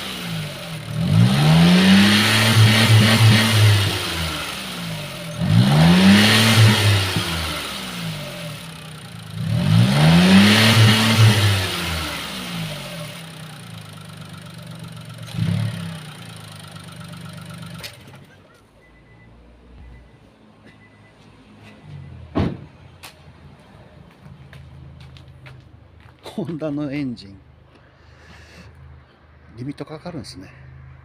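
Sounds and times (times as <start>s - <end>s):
car engine revving and idling: 0.0s - 19.7s.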